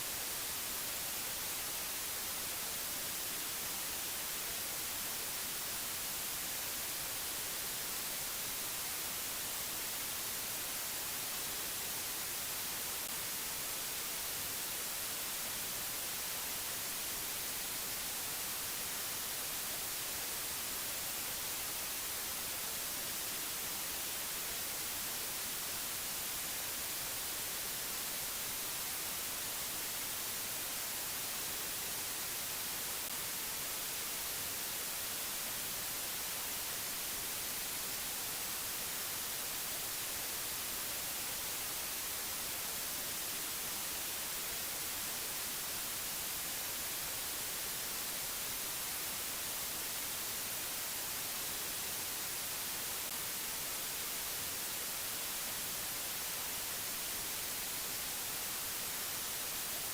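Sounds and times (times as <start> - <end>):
white-noise hiss: 0.0 - 59.9.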